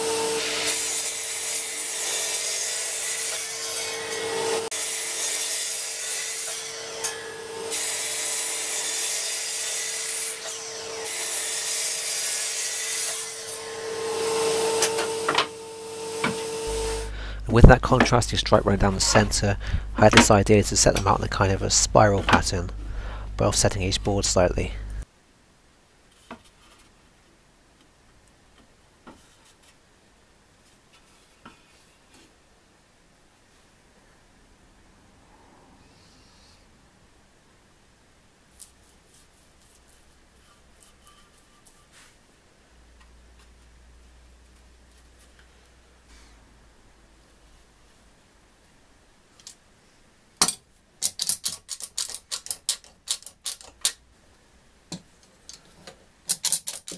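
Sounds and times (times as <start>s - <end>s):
power sander on wood: 13.7s - 20.3s.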